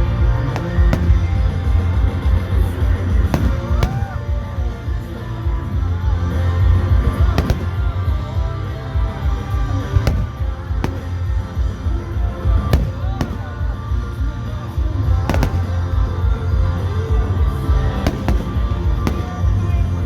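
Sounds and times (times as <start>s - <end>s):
constant low rumble: 0.0s - 20.0s
music playing: 0.0s - 20.0s
fireworks bangs: 0.1s - 5.1s, 6.9s - 16.7s, 17.5s - 20.0s.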